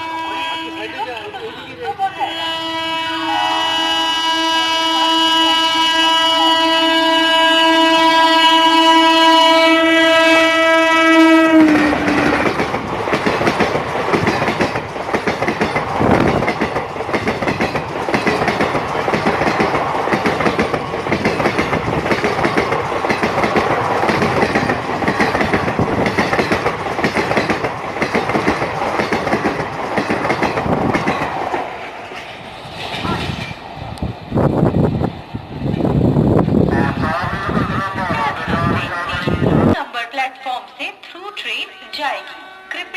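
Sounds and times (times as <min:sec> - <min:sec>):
locomotive horn blast: 0:00.0 - 0:01.0, 0:02.1 - 0:12.3, 0:36.7 - 0:39.7, 0:41.8 - 0:42.9
train wheels clattering over rail joints: 0:11.6 - 0:33.7.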